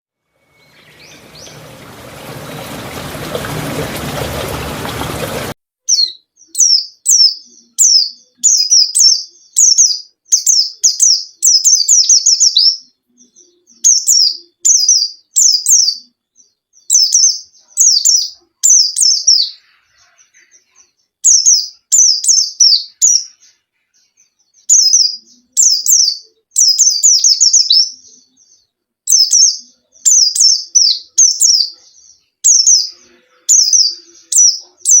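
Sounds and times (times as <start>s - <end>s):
bird chirping high: 0.2s - 35.0s
rushing noise: 0.8s - 5.6s.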